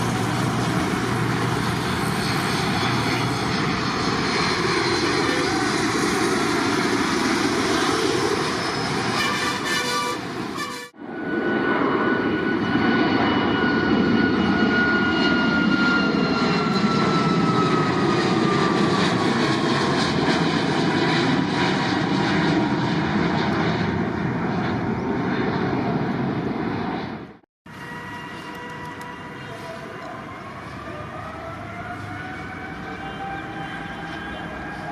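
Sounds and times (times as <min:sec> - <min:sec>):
jet airliner engines passing: 0:00.0 - 0:34.9.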